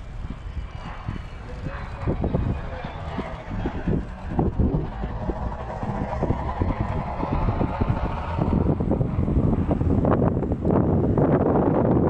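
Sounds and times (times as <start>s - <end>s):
low engine rumble: 0.0s - 12.0s
wind buffeting microphone: 0.0s - 12.0s.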